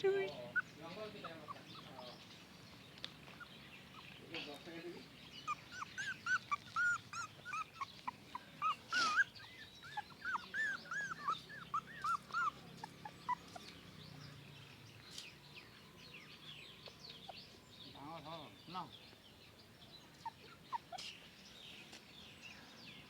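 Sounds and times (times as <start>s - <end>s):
newborn puppies whimpering: 0.1s - 2.1s, 5.4s - 13.8s.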